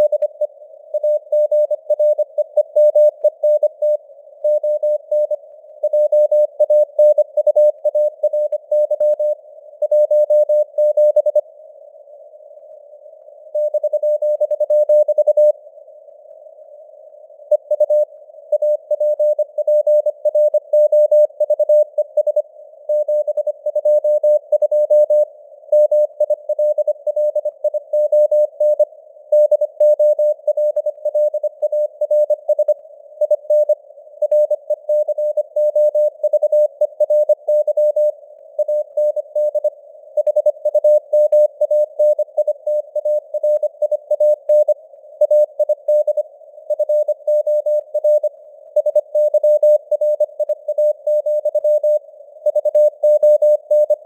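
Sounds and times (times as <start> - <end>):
morse code tone: 34.3 - 54.0.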